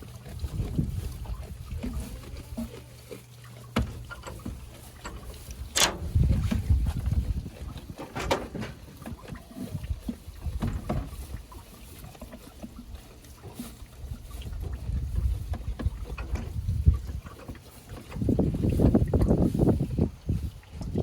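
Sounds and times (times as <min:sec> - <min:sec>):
wind buffeting microphone: 0:00.2 - 0:02.1, 0:04.4 - 0:11.4, 0:14.0 - 0:21.0
scattered clicks and knocks: 0:03.8 - 0:06.1, 0:08.0 - 0:08.9.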